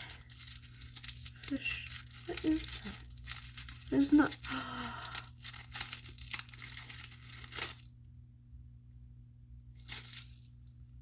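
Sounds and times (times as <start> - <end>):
plastic wrapping crinkling and tearing: 0.0 - 7.9, 9.7 - 10.5.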